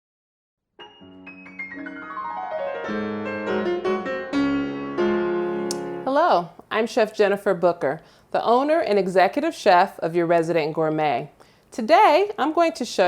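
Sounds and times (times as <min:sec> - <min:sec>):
piano music: 0:00.8 - 0:06.1.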